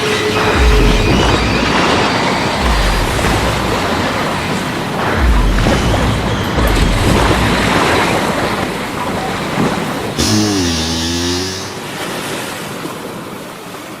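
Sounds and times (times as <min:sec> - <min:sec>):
noisy rumble: 0:00.1 - 0:12.1
low moaning tone: 0:10.2 - 0:11.9.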